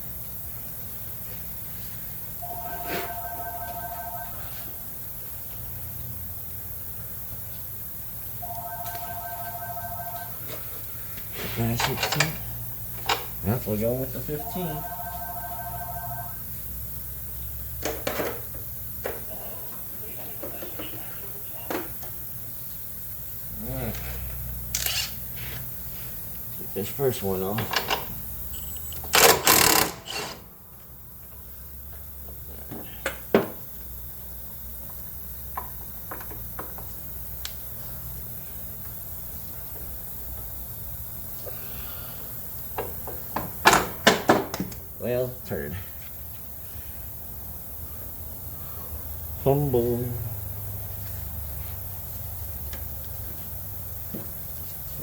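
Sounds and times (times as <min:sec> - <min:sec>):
steady tone: 0:02.4 - 0:04.8, 0:08.4 - 0:10.4.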